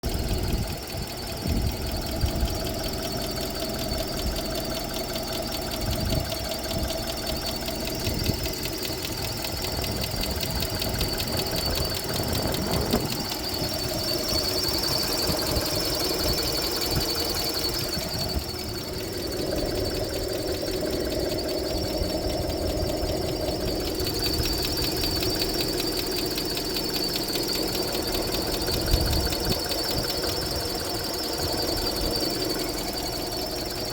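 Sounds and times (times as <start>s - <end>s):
car engine running: 0.0s - 33.9s
fast even ticking: 0.0s - 33.9s.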